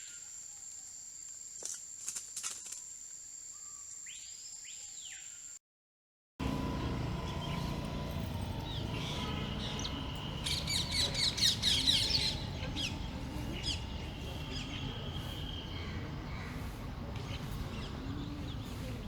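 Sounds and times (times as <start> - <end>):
bird chirping: 6.4 - 19.0
low background noise: 6.4 - 19.0.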